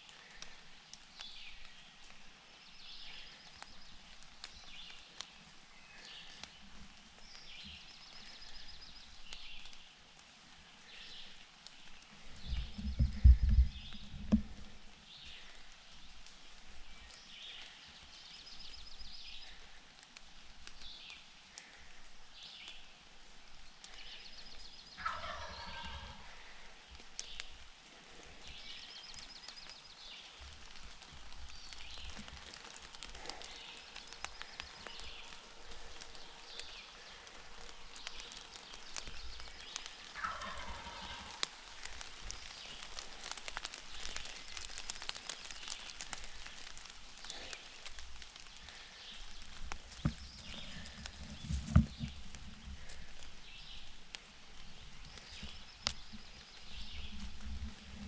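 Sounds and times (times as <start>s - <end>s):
songbirds chirping: 0.0s - 58.0s
turkey gobbling: 25.0s - 26.3s, 40.1s - 41.5s.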